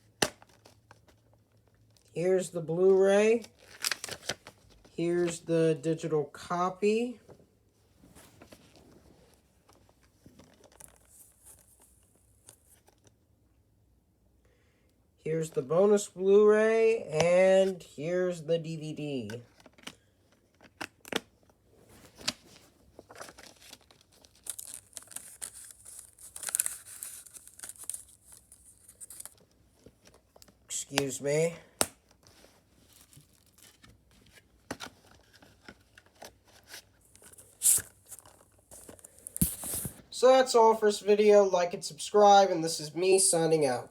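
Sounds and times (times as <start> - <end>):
rustling of paper and case: 8.0 - 13.2, 19.3 - 30.7, 32.0 - 40.1.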